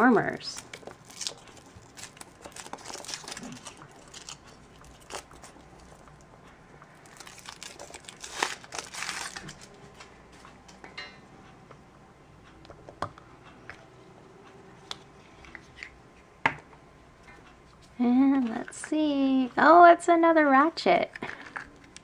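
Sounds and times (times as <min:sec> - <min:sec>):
foil wrapper tearing and crinkling: 0:00.3 - 0:05.9, 0:07.0 - 0:09.7.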